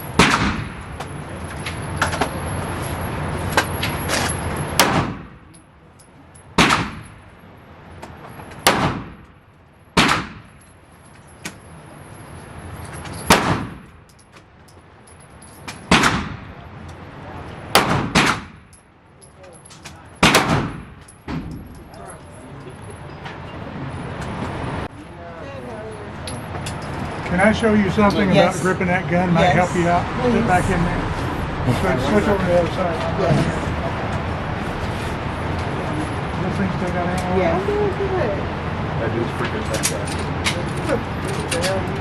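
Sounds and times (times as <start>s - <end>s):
pistol shots with ringing echo: 0.1s - 0.9s, 4.7s - 5.4s, 6.6s - 7.2s, 8.6s - 9.2s, 10.0s - 10.5s, 13.3s - 13.9s, 15.9s - 16.5s, 17.7s - 18.7s, 20.2s - 21.6s.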